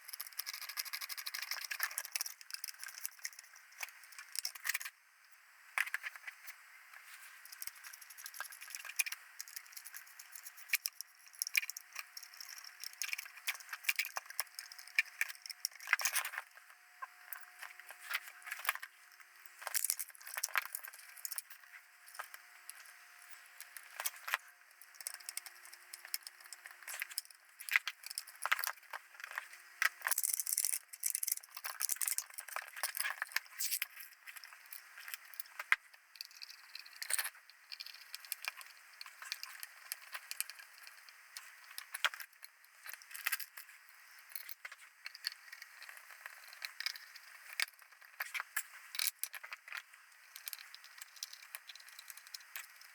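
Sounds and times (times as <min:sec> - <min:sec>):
small metal parts rattling: 0:00.0 - 0:04.9, 0:07.5 - 0:16.4.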